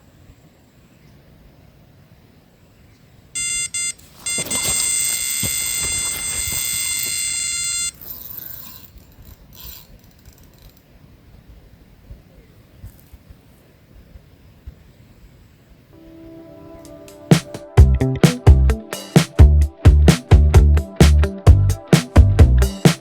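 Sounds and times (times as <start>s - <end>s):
bite alarm beeps: 3.4s - 8.0s
continuous high alarm tone: 3.4s - 8.8s.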